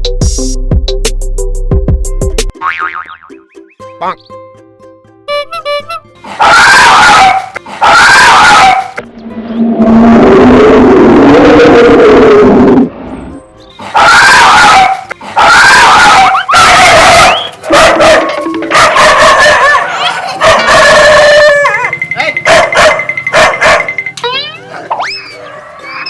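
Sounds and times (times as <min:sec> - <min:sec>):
music: 0:00.0 - 0:10.7, 0:13.0 - 0:20.6, 0:23.1 - 0:26.0
dog barking: 0:06.4 - 0:09.0, 0:14.0 - 0:21.8, 0:22.4 - 0:23.9.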